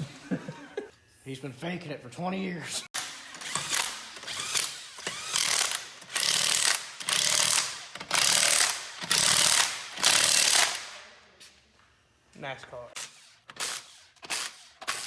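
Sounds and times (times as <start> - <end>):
wrench working a bolt: 3.0 - 10.8.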